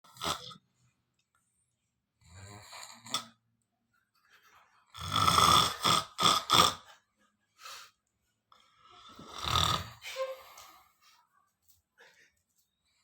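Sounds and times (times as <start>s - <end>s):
person snoring: 5.0s - 6.8s, 9.0s - 10.0s
faint breath: 7.6s - 8.0s.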